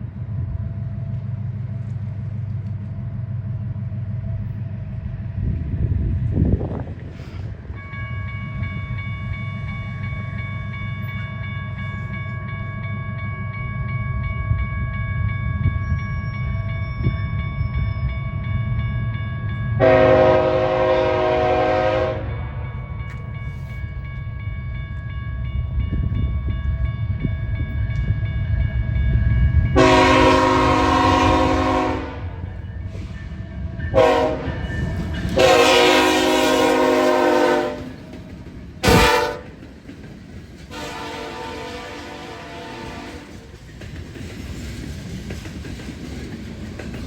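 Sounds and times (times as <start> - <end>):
train rumbling past: 0.0 - 47.0
locomotive horn blasts: 19.8 - 22.6, 29.8 - 32.4, 33.9 - 34.6, 35.3 - 38.0, 38.8 - 39.5, 40.7 - 43.4.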